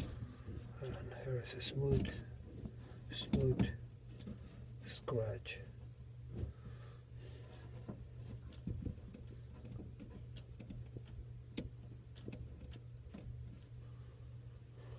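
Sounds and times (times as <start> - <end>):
low hum: 0.0 - 14.9.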